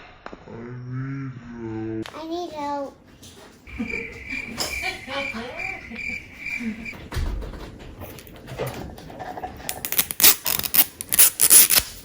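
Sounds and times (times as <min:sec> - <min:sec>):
packaging crinkling crackles: 0:09.9 - 0:12.0.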